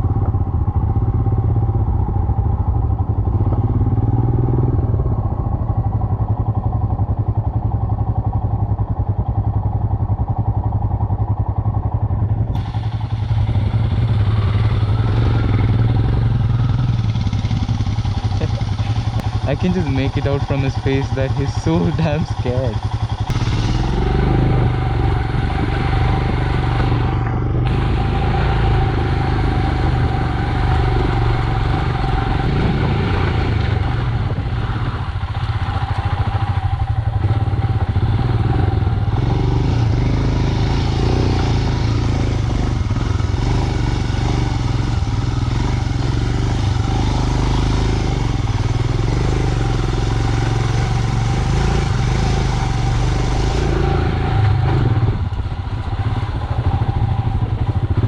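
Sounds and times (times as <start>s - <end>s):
motorcycle engine running: 0.0s - 58.0s.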